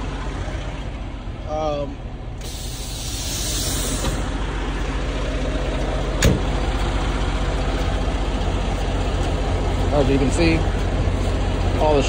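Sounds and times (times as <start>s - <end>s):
diesel truck engine idling: 0.0s - 12.0s
air hiss: 2.4s - 4.3s.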